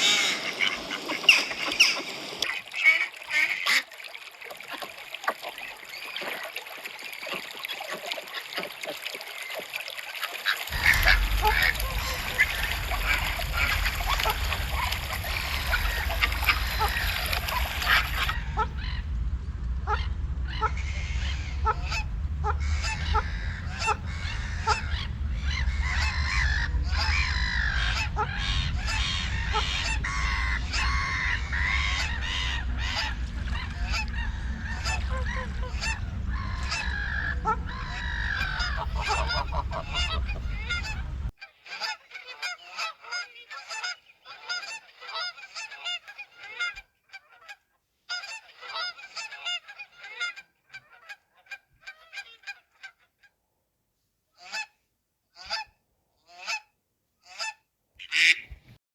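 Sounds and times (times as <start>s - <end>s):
geese honking: 0.0s - 53.1s, 55.4s - 55.7s, 56.3s - 56.7s, 57.3s - 58.6s
steady low rumble: 10.7s - 41.4s.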